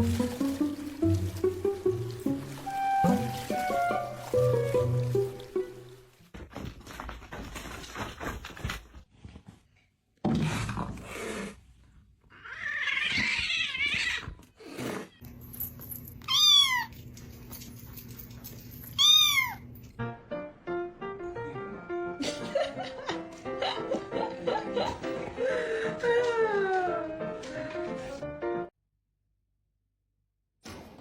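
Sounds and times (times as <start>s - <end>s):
cat meowing: 12.3s - 14.4s, 16.3s - 17.0s, 19.0s - 19.7s.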